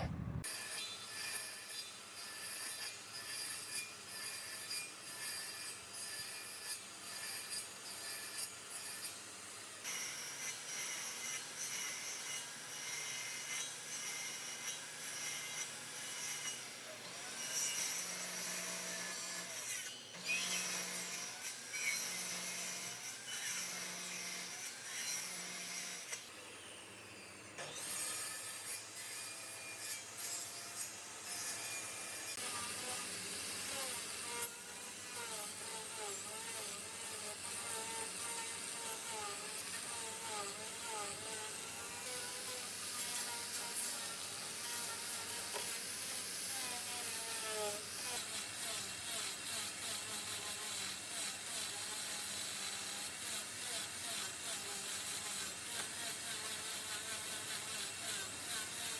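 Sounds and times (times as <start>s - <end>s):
tool rasping on wood: 27.8s - 58.9s.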